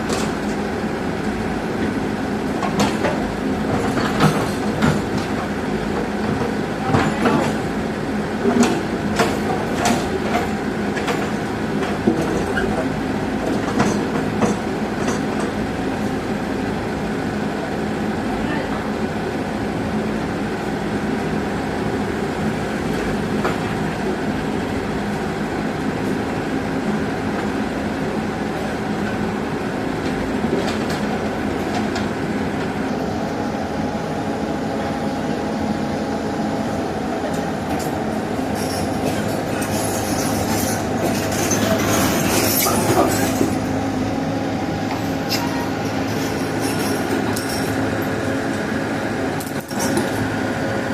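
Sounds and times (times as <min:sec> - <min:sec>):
diesel engine running under load: 0:00.0 - 0:50.9
steel tracks squealing and clanking: 0:08.4 - 0:15.6, 0:36.7 - 0:48.7, 0:49.3 - 0:50.4.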